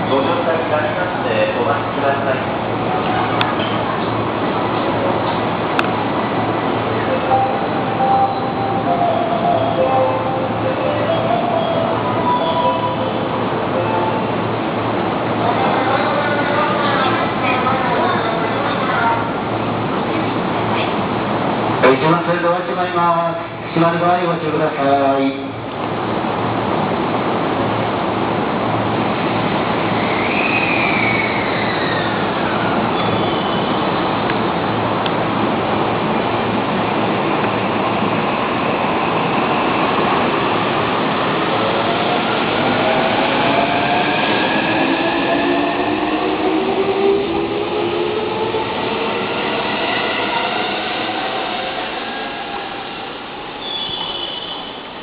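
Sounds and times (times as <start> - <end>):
train wheels rumbling on track: 25.4 - 55.0
high squeal: 29.9 - 34.0, 48.7 - 55.0.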